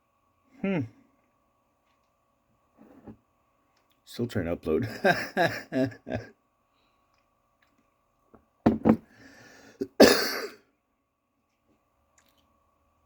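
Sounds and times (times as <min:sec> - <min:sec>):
man breathing: 0:09.1 - 0:09.8
man coughing: 0:09.8 - 0:10.6.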